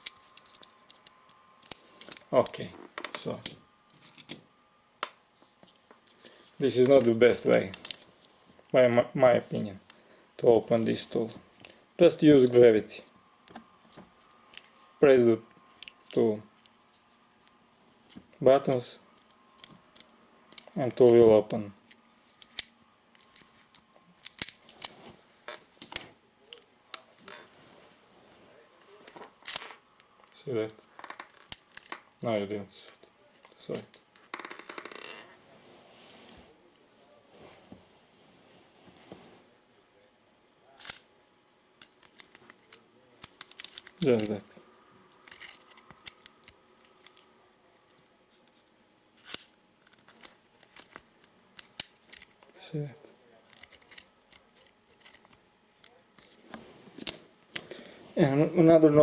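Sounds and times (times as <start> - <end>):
multi-tool metallic clicks and snaps: 18.1 - 24.9, 40.8 - 41.1, 41.8 - 44.4, 49.2 - 52.3.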